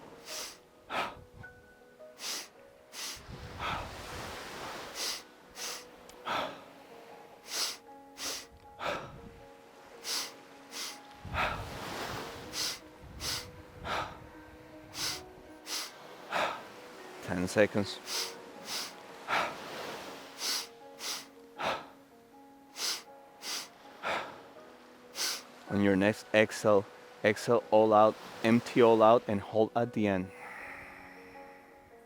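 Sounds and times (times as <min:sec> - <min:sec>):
forceful rhythmic breathing: 0:00.1 - 0:01.3, 0:02.2 - 0:04.0, 0:04.9 - 0:06.7, 0:07.4 - 0:09.2, 0:10.0 - 0:11.8, 0:12.4 - 0:14.2, 0:14.9 - 0:16.7, 0:17.9 - 0:22.0, 0:22.7 - 0:24.4, 0:25.2 - 0:25.4.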